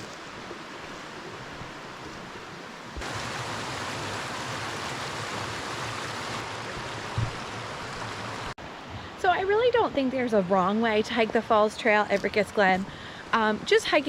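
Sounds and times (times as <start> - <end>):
waterfall rushing: 0.0 - 8.5.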